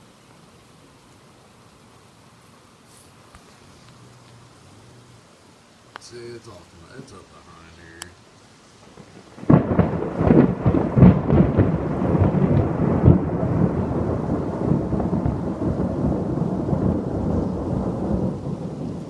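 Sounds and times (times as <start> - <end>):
thunder crack and rumble: 8.9 - 19.0.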